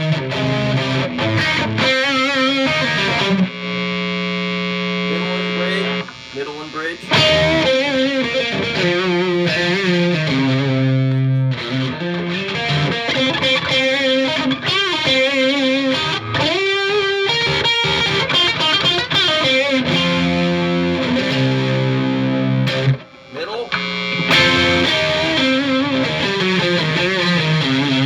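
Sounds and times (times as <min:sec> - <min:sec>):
distorted electric guitar lead: 0:00.0 - 0:28.0.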